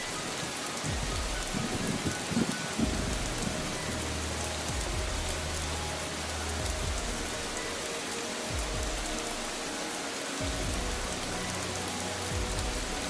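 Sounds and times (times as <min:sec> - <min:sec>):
raindrop ticks: 0:00.0 - 0:13.0
steady rain falling: 0:00.0 - 0:13.0
low rumbles: 0:02.8 - 0:07.7.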